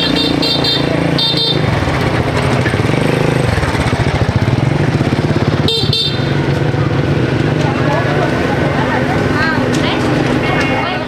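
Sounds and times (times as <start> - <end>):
horn toot: 0.0 - 2.2, 5.6 - 6.4
motorbike engine running: 0.0 - 11.0.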